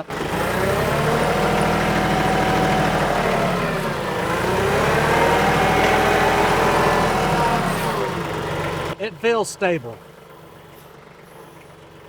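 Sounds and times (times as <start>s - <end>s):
diesel tractor engine under load: 0.0s - 12.0s.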